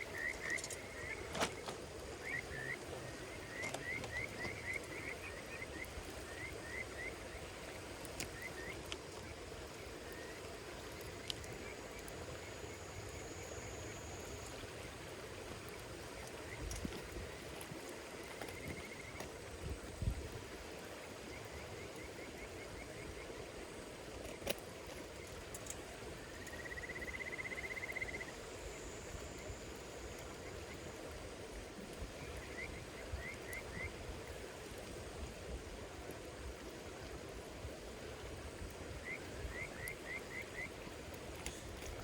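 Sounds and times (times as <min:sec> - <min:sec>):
insect trill: 0:00.0 - 0:07.2, 0:08.3 - 0:15.0, 0:25.2 - 0:30.9
insects calling: 0:00.0 - 0:19.9, 0:20.8 - 0:31.4, 0:32.1 - 0:34.1, 0:38.9 - 0:42.0
fire popping: 0:00.0 - 0:20.3, 0:23.9 - 0:26.6
campfire crackling: 0:00.0 - 0:42.0.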